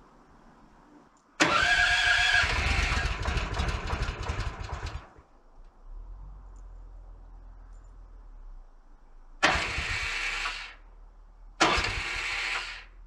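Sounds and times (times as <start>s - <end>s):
small gas engine running: 1.4s - 5.2s, 9.4s - 10.8s, 11.6s - 12.9s.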